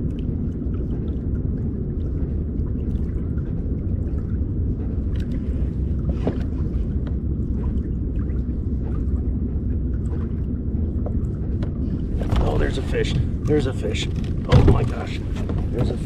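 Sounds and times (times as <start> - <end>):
kayak moving through water: 0.0 - 16.0.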